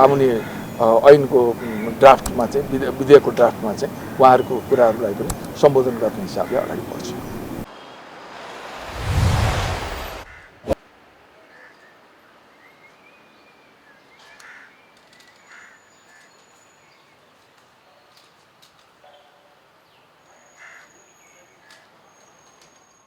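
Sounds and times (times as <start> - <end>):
short bird calls: 0.0 - 7.7
faint background noise: 0.0 - 23.0
light clicks: 2.2 - 2.5, 5.2 - 5.6.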